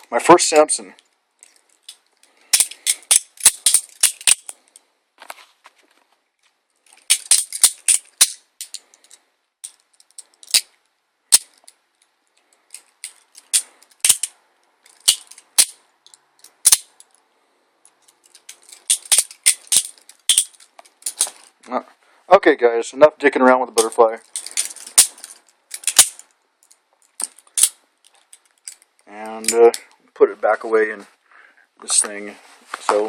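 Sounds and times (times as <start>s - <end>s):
folding knife handles clacking: 1.4s - 4.6s, 6.9s - 10.7s, 12.6s - 17.2s, 18.0s - 21.5s, 23.8s - 29.8s.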